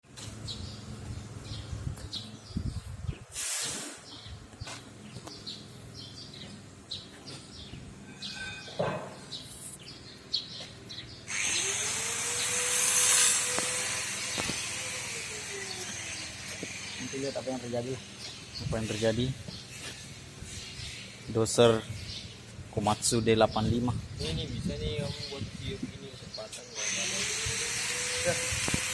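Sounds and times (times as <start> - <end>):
rushing hiss of blowing air: 3.3 - 4.1, 11.3 - 17.3, 26.8 - 28.9.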